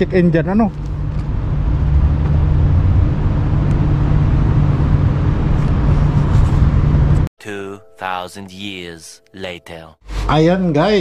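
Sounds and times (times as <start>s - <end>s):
road noise: 0.0s - 7.3s
vehicle engine hum: 0.0s - 7.3s.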